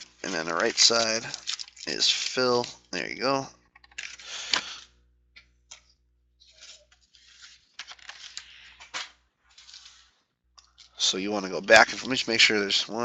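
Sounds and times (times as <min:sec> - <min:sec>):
foil wrappers crinkling: 0:00.0 - 0:03.2, 0:03.8 - 0:04.8, 0:06.4 - 0:10.1, 0:10.7 - 0:13.0.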